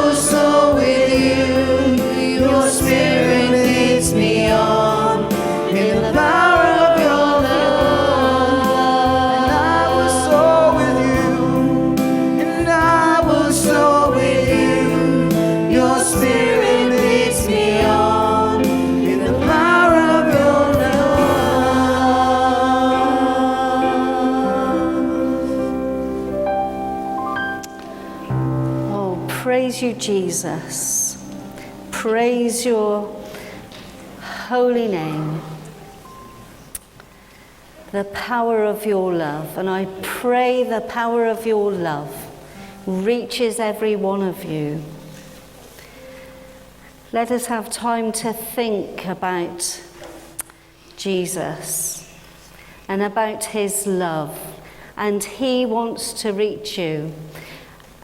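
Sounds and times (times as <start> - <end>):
choir singing worship song: 0.0 - 27.1.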